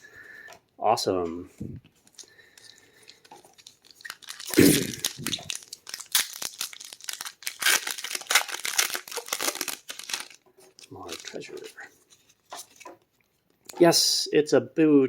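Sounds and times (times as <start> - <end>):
foil wrapper crinkling: 2.0 - 12.9
wrapper tearing: 2.0 - 12.9.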